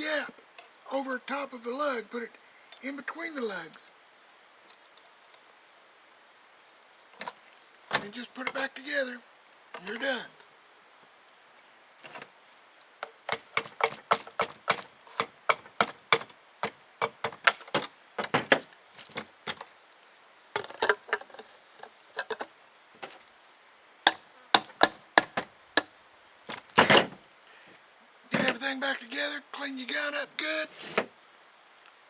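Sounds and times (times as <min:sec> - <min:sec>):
clicks and knocks of nailer parts: 0:07.2 - 0:08.7, 0:12.0 - 0:12.3, 0:13.0 - 0:19.7, 0:20.6 - 0:21.5, 0:22.2 - 0:23.2, 0:24.1 - 0:25.9, 0:26.5 - 0:27.2, 0:28.3 - 0:28.6.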